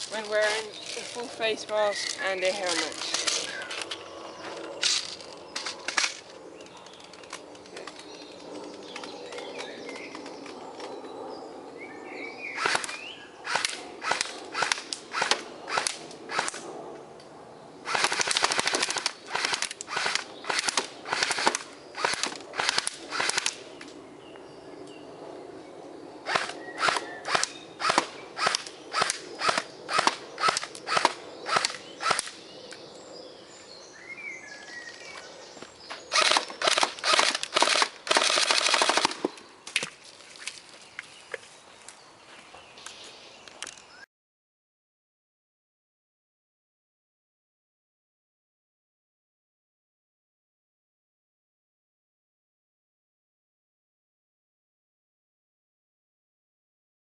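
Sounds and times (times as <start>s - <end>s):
airsoft gun shots: 17.9s - 23.6s, 26.3s - 32.3s.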